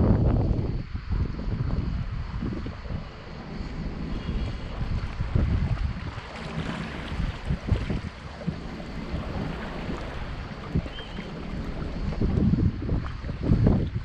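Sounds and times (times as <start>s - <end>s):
wind buffeting microphone: 0.0s - 14.0s
sea surf hissing: 1.2s - 13.6s.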